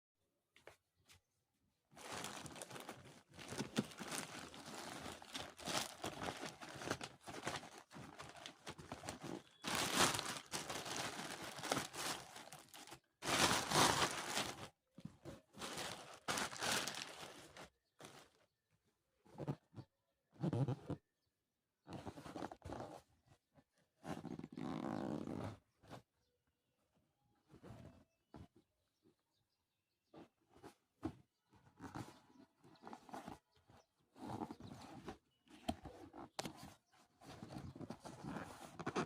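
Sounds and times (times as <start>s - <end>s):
packaging crinkling and tearing: 2.0s - 14.7s, 15.6s - 17.7s.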